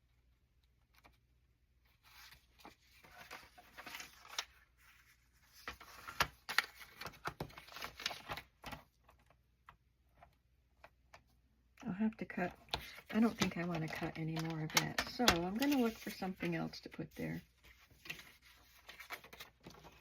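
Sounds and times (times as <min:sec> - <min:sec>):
paper rustling: 0:01.8 - 0:09.4, 0:12.4 - 0:20.0.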